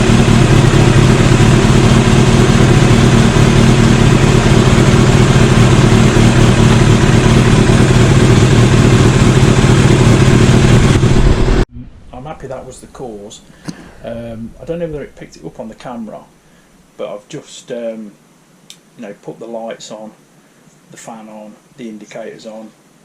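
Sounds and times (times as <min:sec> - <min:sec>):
motorcycle engine idling: 0:00.0 - 0:11.6.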